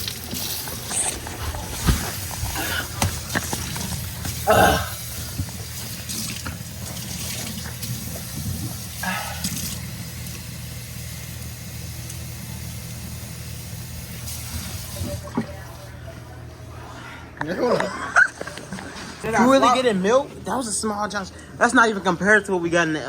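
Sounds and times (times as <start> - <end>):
water running: 0.0 - 16.8.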